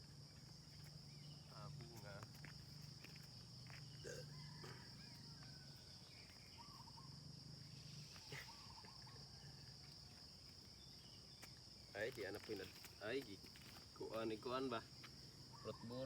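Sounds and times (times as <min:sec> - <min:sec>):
faint bird calls: 0:06.2 - 0:07.2, 0:07.9 - 0:09.4, 0:15.5 - 0:16.0.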